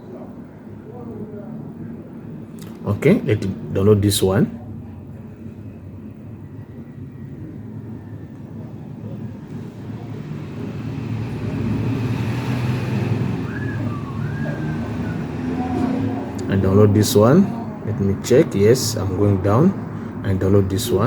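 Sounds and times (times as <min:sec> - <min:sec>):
faint whistle-like glides: 0:05.5 - 0:16.4.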